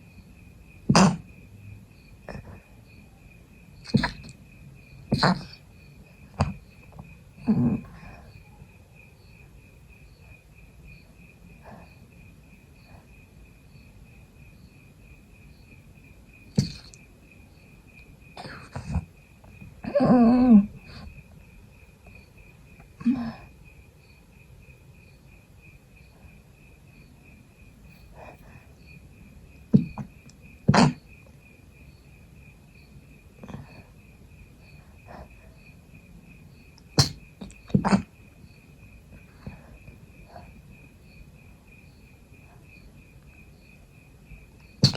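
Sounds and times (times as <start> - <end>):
insect chirping: 0.0 - 44.9
person sneezing: 0.9 - 1.2, 3.9 - 4.4, 5.1 - 5.6, 16.6 - 17.0, 30.7 - 31.0, 37.0 - 38.1.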